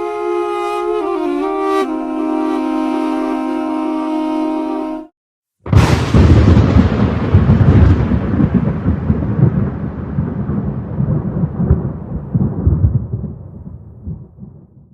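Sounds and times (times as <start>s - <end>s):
thunder rumbling: 5.7s - 14.9s.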